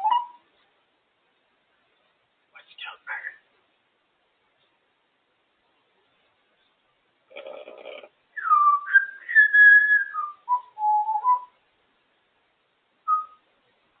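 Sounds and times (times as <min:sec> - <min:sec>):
parrot whistling: 0:00.0 - 0:00.4, 0:08.4 - 0:11.5.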